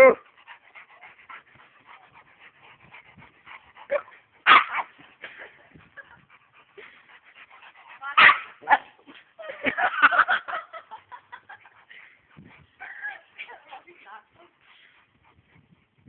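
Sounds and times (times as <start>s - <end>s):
dogs yipping and barking: 0.0s - 7.0s, 7.9s - 11.6s, 12.7s - 13.6s.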